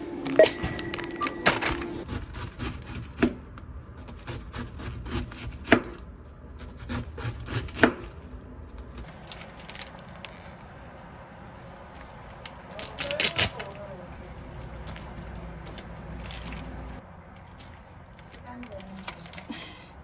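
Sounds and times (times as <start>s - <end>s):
steady tone: 0.0s - 2.0s.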